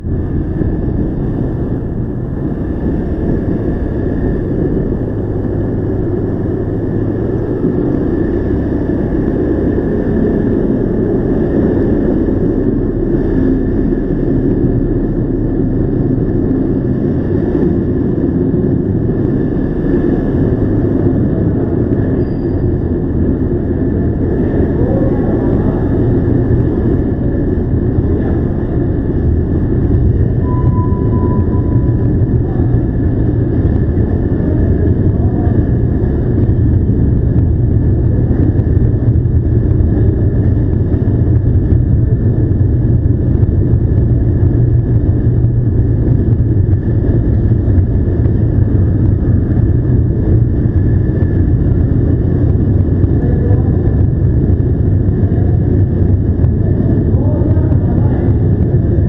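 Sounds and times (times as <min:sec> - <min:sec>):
motorcycle engine rumbling: 0:00.0 - 0:59.0
short beep: 0:30.4 - 0:32.0.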